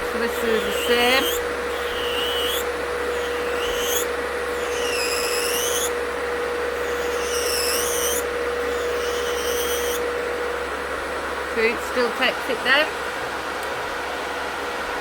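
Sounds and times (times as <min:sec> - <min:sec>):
electric nail drill whining: 0:00.0 - 0:10.2
fan humming: 0:00.0 - 0:15.0.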